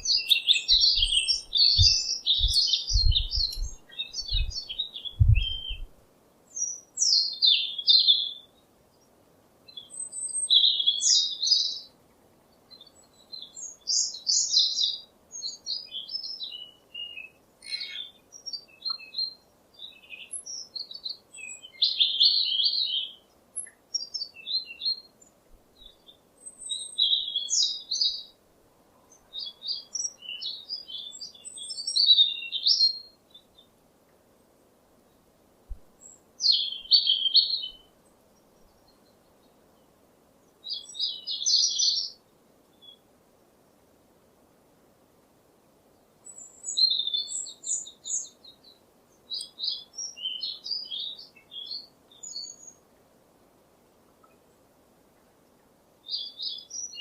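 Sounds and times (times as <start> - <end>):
songbird twittering: 0.0 - 8.5, 12.7 - 25.1, 36.0 - 37.9, 46.2 - 52.8
faint steady hiss: 0.0 - 57.0.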